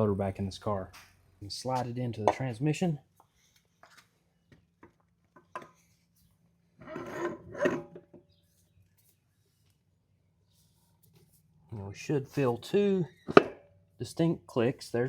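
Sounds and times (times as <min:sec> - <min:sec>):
metal scraping and rubbing: 0:06.8 - 0:08.0.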